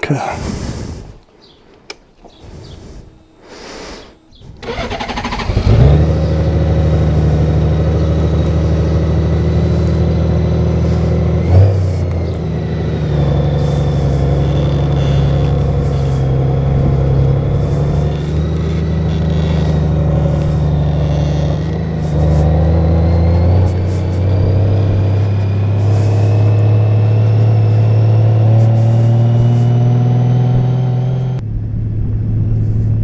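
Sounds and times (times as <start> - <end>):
motorcycle engine starting and idling: 4.1 - 31.4.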